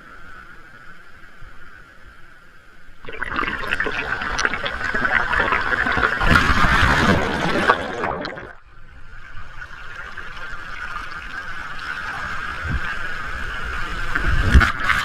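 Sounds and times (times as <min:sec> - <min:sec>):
wave breaking and water rushing: 0:03.0 - 0:08.6, 0:09.3 - 0:15.0.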